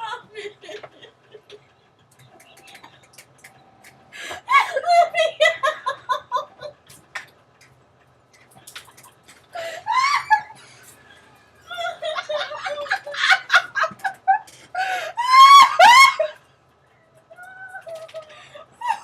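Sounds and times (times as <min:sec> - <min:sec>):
people laughing hard: 0:04.2 - 0:06.8, 0:09.6 - 0:10.8, 0:11.7 - 0:16.4
high-pitched squealing laughter: 0:04.4 - 0:06.8, 0:09.7 - 0:10.8, 0:11.7 - 0:14.4, 0:15.1 - 0:16.4, 0:17.3 - 0:19.0.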